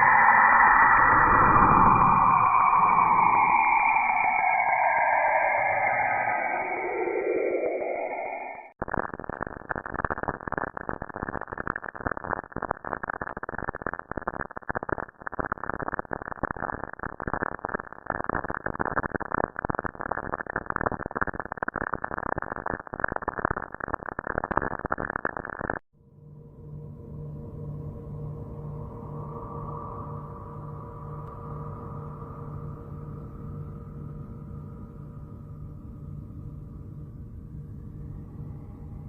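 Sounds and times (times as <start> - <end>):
dense crackling static: 0.0 - 25.9.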